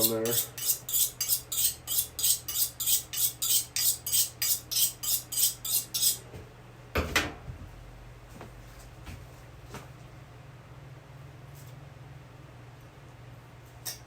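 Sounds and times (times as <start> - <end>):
knife blade scraping: 0.0 - 6.2.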